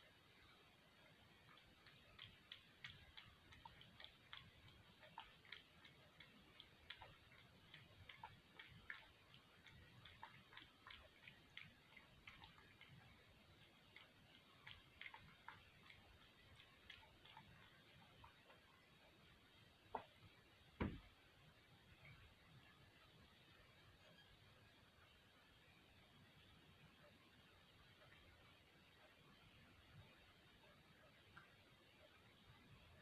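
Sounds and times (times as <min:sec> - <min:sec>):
cat lapping milk: 0:00.2 - 0:20.7.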